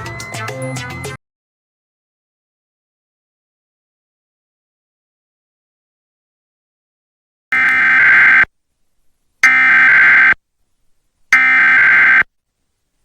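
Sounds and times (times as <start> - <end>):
buzzing digital data bursts: 7.6 - 8.5, 9.4 - 10.4, 11.3 - 12.2.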